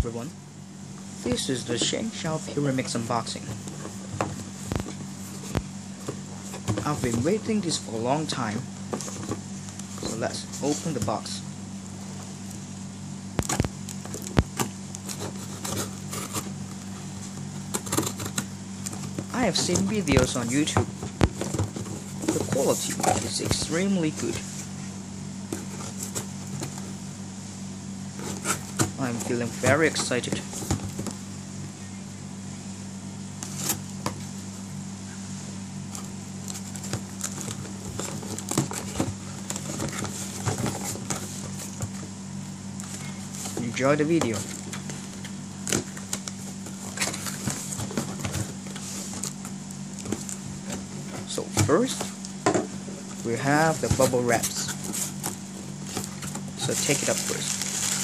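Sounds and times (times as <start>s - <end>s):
low electrical hum: 0.0s - 58.0s
packaging crinkling: 53.9s - 58.0s.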